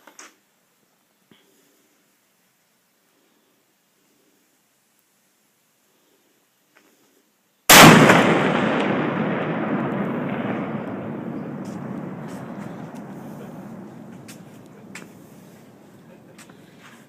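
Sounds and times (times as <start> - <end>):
cannon blast: 7.7 - 16.4
rumbling tail: 7.8 - 17.0.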